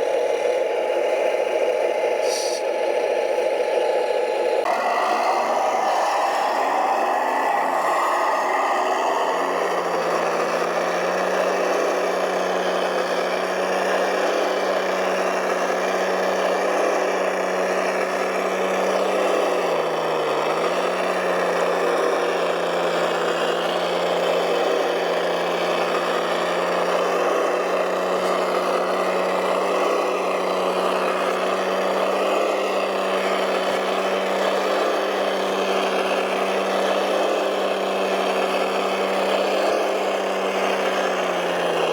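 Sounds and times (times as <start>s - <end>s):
model truck engine running: 0.0s - 41.9s.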